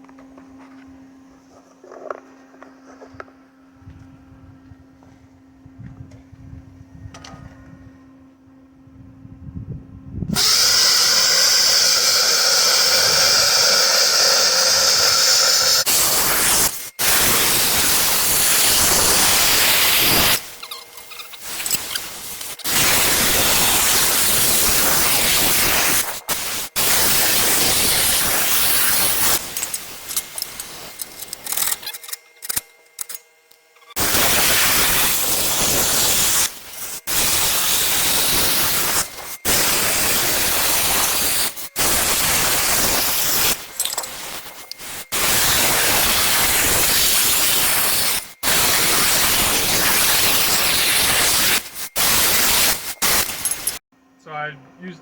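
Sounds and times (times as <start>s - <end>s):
plasma cutter hissing: 10.4s - 31.9s, 33.9s - 53.8s.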